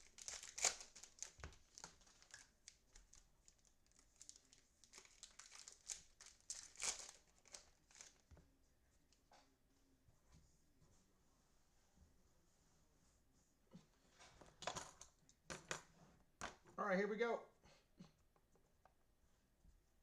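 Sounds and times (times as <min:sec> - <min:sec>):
plastic wrapping crinkling and tearing: 0:00.0 - 0:08.3.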